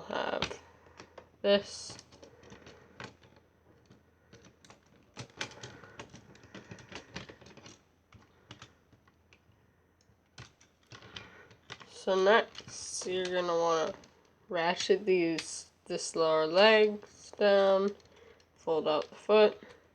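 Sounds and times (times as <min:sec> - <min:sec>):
plastic pieces clicking and knocking: 0:01.9 - 0:15.6, 0:17.8 - 0:19.9.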